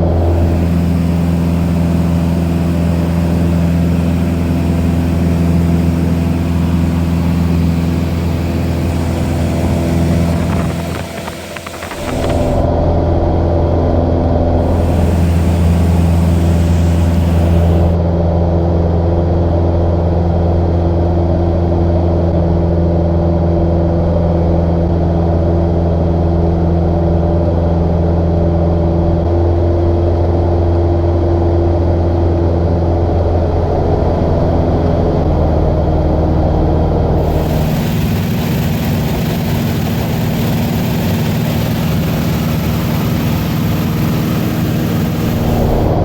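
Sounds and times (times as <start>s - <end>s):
hiss: 0.0s - 5.4s, 8.3s - 12.7s, 14.6s - 18.0s, 37.2s - 46.0s
airplane engine and propeller droning: 0.0s - 19.8s, 24.8s - 46.0s.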